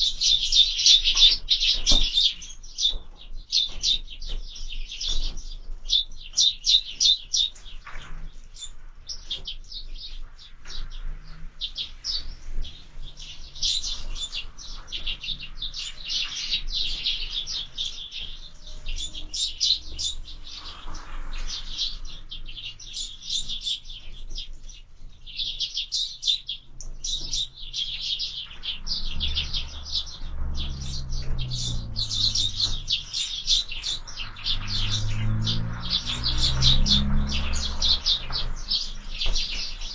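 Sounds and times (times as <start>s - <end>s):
sparrows chirping: 0.0s - 39.9s
low rumble: 28.6s - 38.8s.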